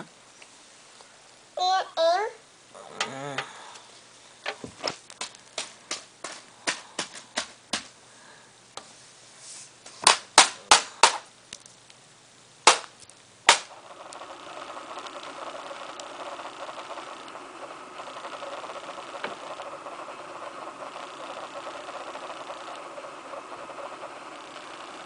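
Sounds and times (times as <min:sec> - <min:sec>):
computer fans whirring: 0:09.8 - 0:25.0.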